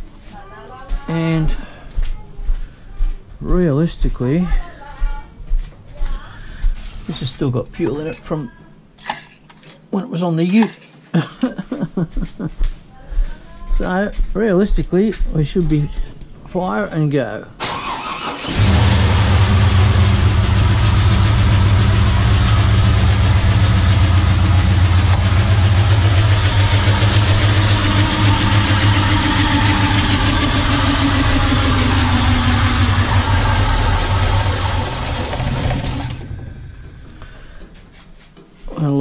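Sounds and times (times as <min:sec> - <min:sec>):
car engine running: 0:18.4 - 0:37.5.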